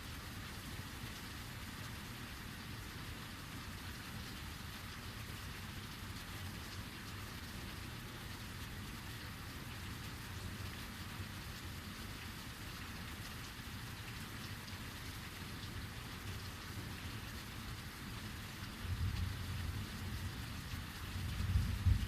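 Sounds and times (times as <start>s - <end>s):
heavy rain pattering: 0.0s - 22.0s
thunder rumble: 21.2s - 22.0s.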